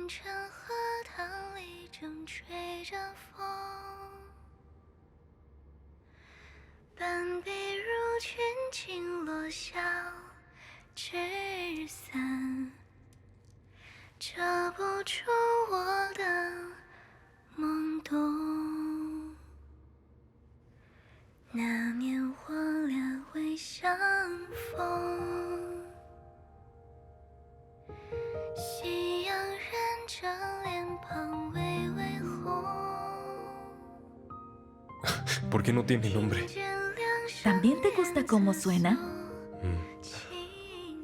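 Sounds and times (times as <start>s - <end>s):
woman singing slow melody: 0.0s - 4.4s, 11.0s - 12.8s, 14.2s - 16.8s, 17.6s - 19.5s, 21.5s - 26.2s, 28.4s - 34.3s, 36.1s - 41.0s.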